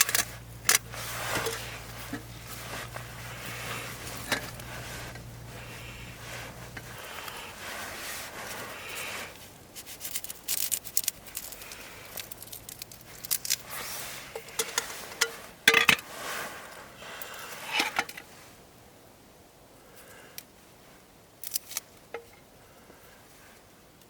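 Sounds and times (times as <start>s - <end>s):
sharp handling clicks: 0.0s - 1.6s
crinkles and scrapes: 0.0s - 18.6s, 21.4s - 22.4s.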